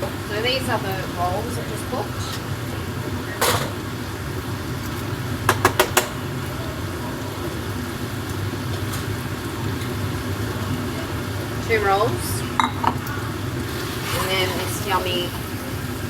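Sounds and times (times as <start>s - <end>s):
kitchen appliance humming: 0.0s - 16.0s
dishes clicking: 5.5s - 6.2s, 12.6s - 13.2s.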